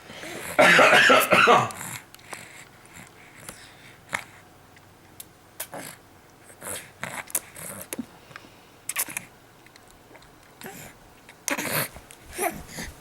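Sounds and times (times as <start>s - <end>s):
baby breathy noises: 10.6s - 13.0s.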